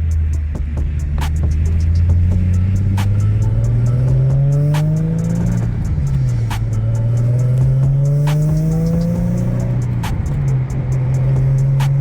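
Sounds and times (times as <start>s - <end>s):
car engine accelerating: 0.0s - 12.0s.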